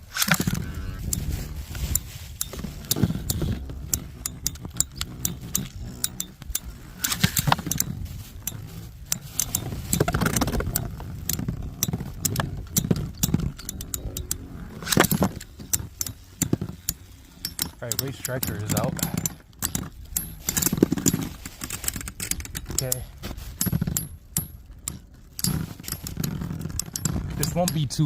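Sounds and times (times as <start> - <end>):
wind rumble on microphone: 0.0 - 15.8.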